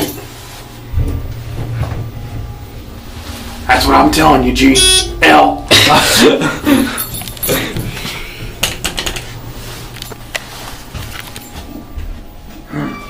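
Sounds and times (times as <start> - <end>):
elevator hum: 0.0 - 13.0
sharp clicks and knocks: 7.2 - 11.4.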